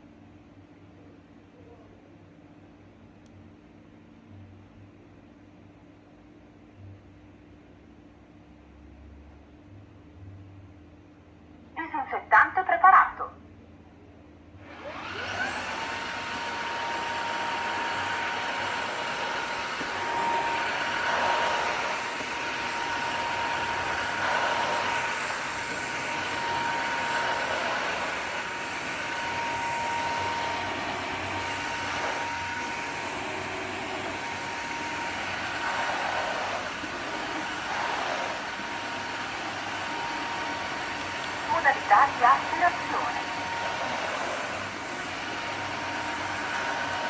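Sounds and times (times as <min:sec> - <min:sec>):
vacuum motor whining: 0:14.7 - 0:47.0.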